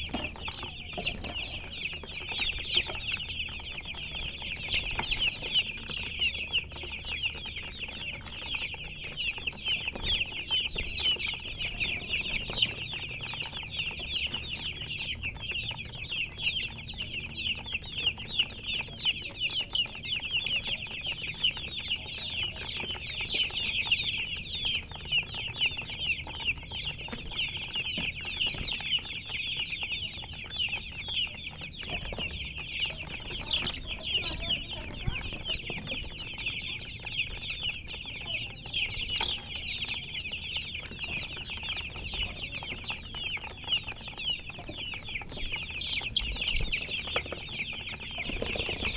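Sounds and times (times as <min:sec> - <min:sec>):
chicks peeping: 0:00.0 - 0:48.9.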